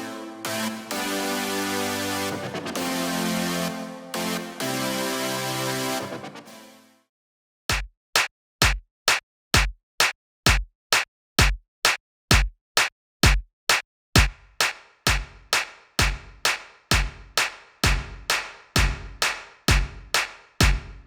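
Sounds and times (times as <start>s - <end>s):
synth chord reverb tail: 0.0s - 6.9s
kick and snare drum hits: 7.7s - 9.8s, 10.5s - 10.7s, 11.4s - 21.0s.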